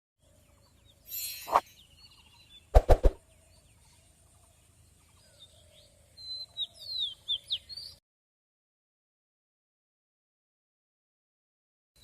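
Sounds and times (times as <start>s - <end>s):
small birds chirping: 0.2s - 8.0s.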